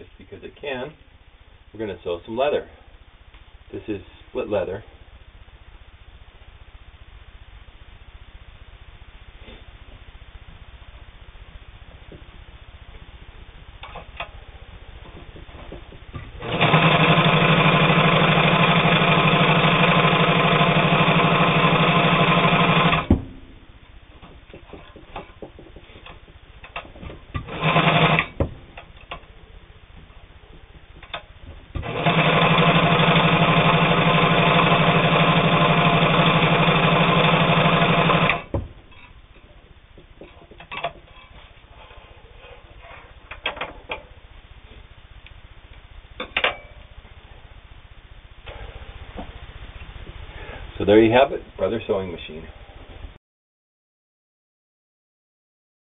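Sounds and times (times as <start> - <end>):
sewing machine running: 16.4 - 23.1, 27.4 - 28.4, 31.8 - 38.5.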